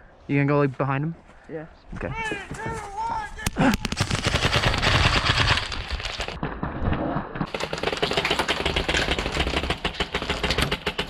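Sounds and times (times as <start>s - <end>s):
airsoft guns firing bursts: 3.9s - 6.3s, 7.5s - 11.0s.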